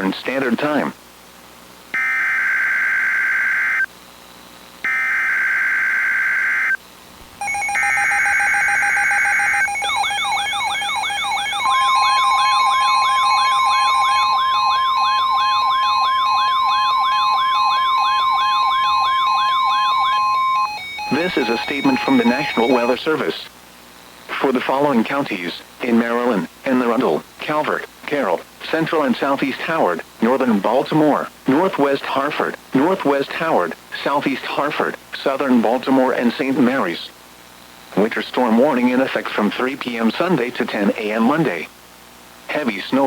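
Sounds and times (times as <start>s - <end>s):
steady warning alarm tone: 2.0s - 3.9s, 4.8s - 6.8s, 7.4s - 23.3s
buzzy digital header data: 2.0s - 23.4s
warbling alert tone: 7.4s - 23.0s.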